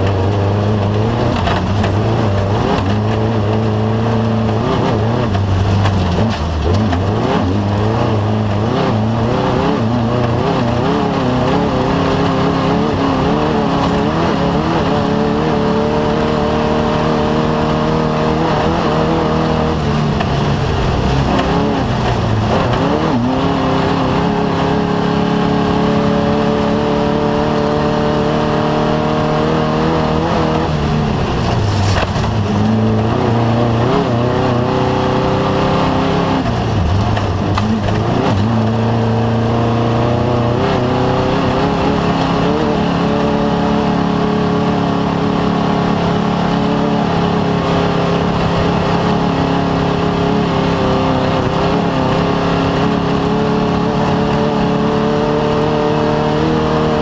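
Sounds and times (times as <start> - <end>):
race vehicle engine running hard: 0.0 - 57.0.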